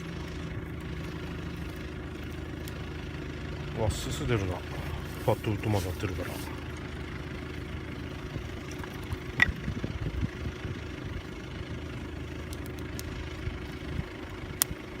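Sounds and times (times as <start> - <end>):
campfire crackling: 0.0 - 15.0
steady low hum: 0.0 - 15.0.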